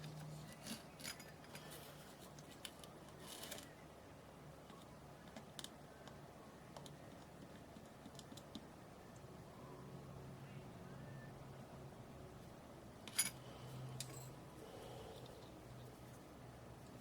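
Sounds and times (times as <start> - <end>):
rustle of small parts: 0.0 - 3.8
small parts and tools clicking: 0.0 - 3.8
low steady hum: 0.0 - 17.0.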